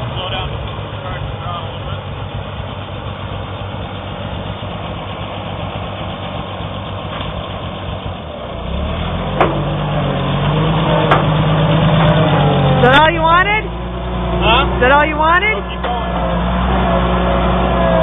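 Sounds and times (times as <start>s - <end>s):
tractor engine running: 0.0s - 18.0s
sharp clanks: 10.4s - 12.5s.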